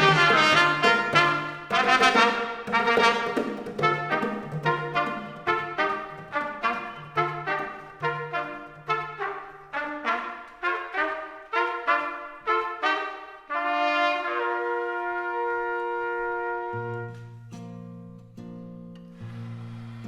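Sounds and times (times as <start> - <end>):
brass ensemble playing chords: 0.0 - 17.3.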